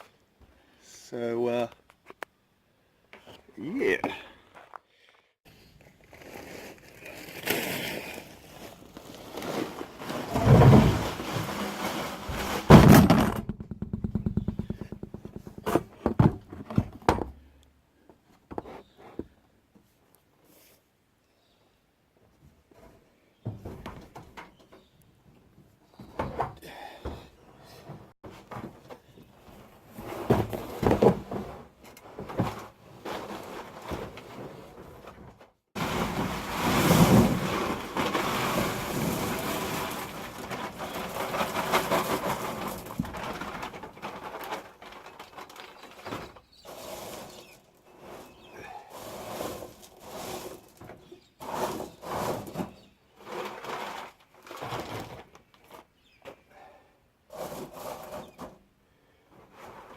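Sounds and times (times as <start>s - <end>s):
stones rattling into plastic tank: 9.2s - 17.2s, 35.8s - 46.4s, 49.1s - 55.5s
handling knocks: 12.3s - 17.3s.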